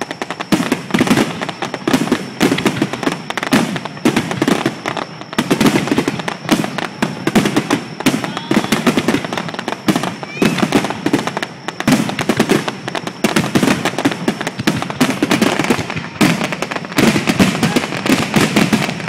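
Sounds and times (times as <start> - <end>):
fireworks crackling and banging: 0.0 - 19.0.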